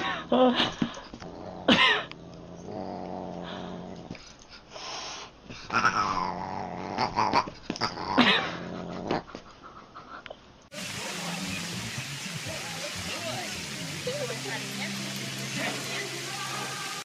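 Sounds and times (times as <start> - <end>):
cat growling: 1.2 - 4.1, 5.7 - 9.3.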